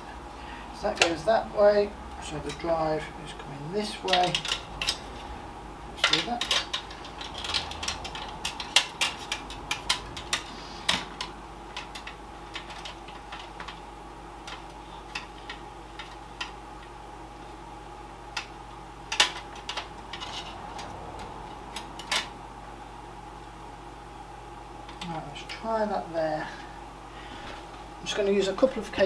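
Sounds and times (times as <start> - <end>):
faint steady hum: 0.0 - 29.0
plastic and metal parts clicking: 4.1 - 5.1, 6.0 - 13.8.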